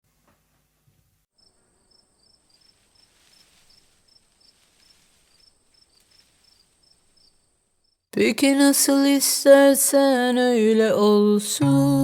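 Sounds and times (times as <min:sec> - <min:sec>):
crickets chirping: 0:01.4 - 0:08.1.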